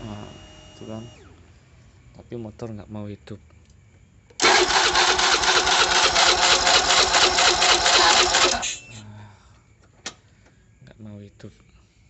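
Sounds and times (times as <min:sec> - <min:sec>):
motorcycle engine cranking: 0:04.4 - 0:08.8.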